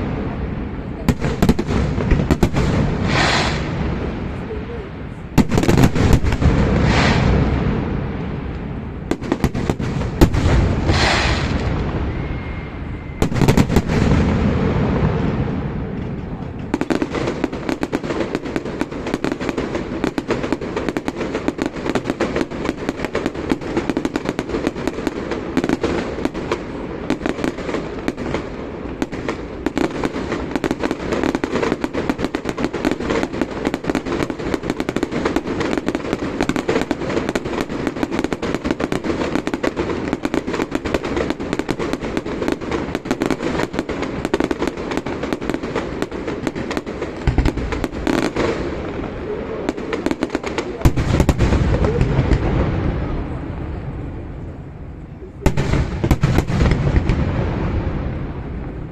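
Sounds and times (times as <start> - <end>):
rapid firework crackling: 0.0 - 53.5, 55.4 - 58.9
loud firework bang: 1.0 - 4.1, 5.4 - 8.1, 9.1 - 19.4.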